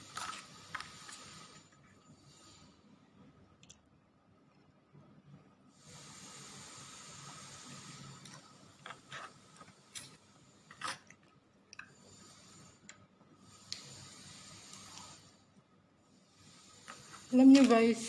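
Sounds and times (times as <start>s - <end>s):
faint hiss: 5.7s - 10.8s, 11.9s - 15.5s.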